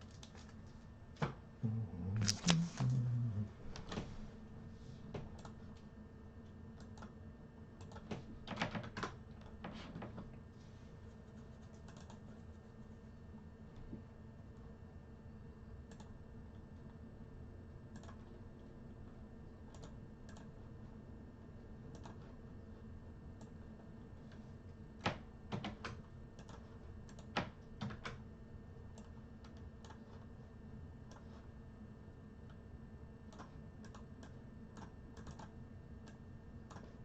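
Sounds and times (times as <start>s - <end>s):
faint electrical hum: 0.0s - 37.0s
keyboard typing and clicking: 7.8s - 9.6s, 11.6s - 12.3s, 33.3s - 37.0s.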